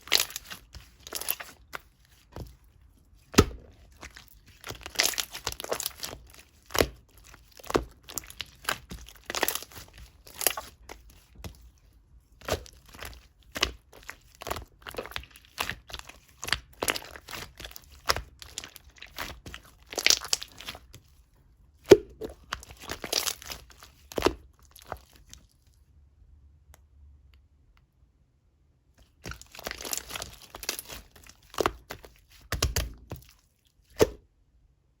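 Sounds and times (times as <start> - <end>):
slime popping and crackling: 0.0 - 2.4, 3.3 - 11.1, 12.4 - 20.9, 21.9 - 25.3, 29.2 - 33.2.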